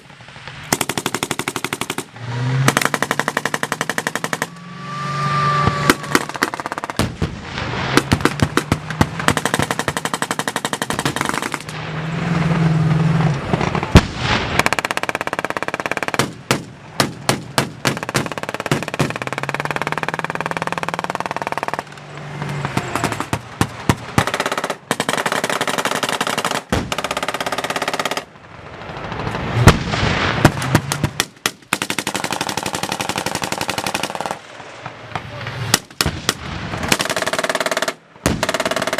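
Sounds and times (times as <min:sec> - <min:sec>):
machine gun automatic fire: 0:00.7 - 0:04.6, 0:05.8 - 0:07.2, 0:08.0 - 0:11.8, 0:14.5 - 0:21.9, 0:22.8 - 0:34.4, 0:36.7 - 0:38.9.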